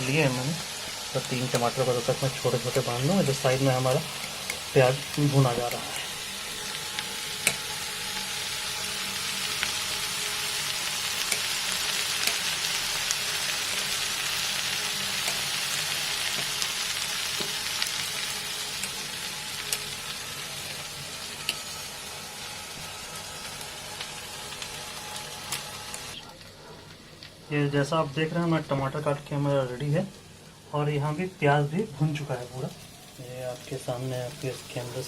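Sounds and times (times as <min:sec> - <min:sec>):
onions sizzling in oil: 0:00.0 - 0:35.0.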